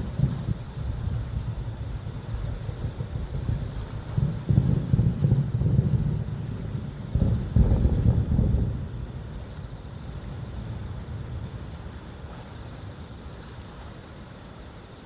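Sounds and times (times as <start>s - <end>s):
fireworks booming: 0.0s - 11.7s.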